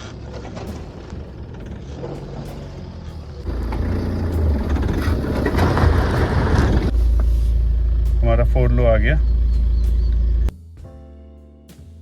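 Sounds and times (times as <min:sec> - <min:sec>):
diesel engine running: 0:00.0 - 0:10.5
loud low rumble: 0:03.4 - 0:10.5.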